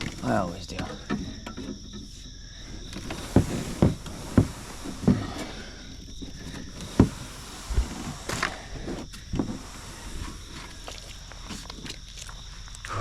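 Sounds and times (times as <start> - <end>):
dull knocks: 0.0 - 9.8
insects trilling: 0.0 - 13.0.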